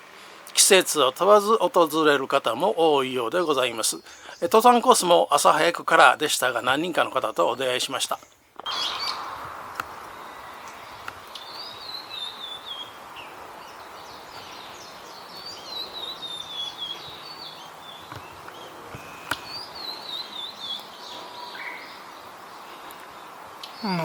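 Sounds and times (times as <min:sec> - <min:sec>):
steady background hiss: 0:00.0 - 0:24.0
songbird warbling: 0:06.4 - 0:09.3.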